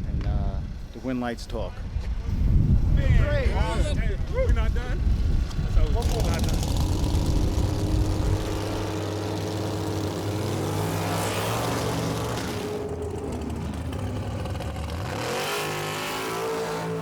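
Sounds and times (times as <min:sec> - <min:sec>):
drag racing car engine running: 0:05.5 - 0:17.0.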